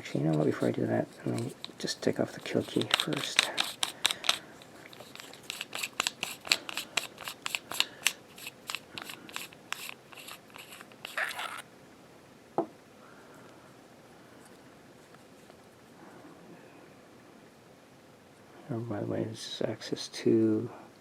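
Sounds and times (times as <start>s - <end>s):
metal scrape: 0.0s - 11.6s.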